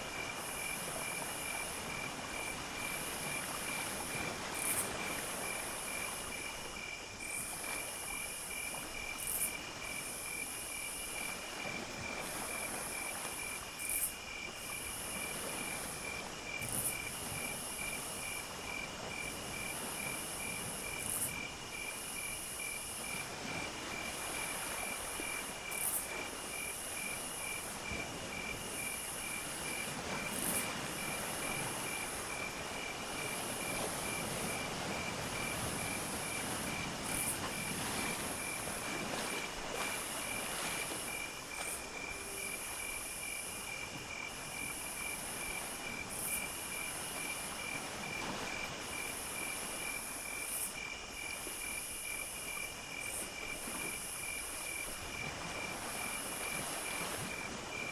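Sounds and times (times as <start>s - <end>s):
crickets chirping: 0.0s - 57.9s.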